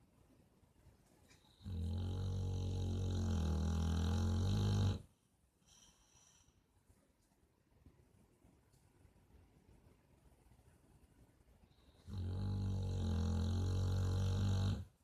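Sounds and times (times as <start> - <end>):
low-pitched snore: 1.6 - 5.1, 12.0 - 14.9.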